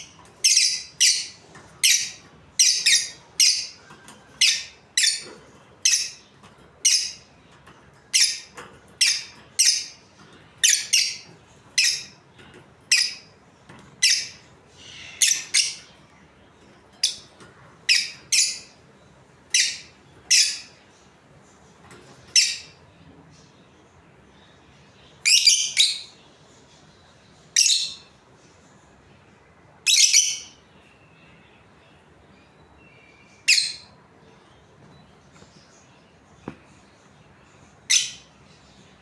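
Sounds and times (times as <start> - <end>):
budgerigars chirping: 0.0 - 7.4, 8.1 - 13.3, 14.0 - 16.0, 17.0 - 18.8, 19.5 - 20.8, 37.9 - 38.3.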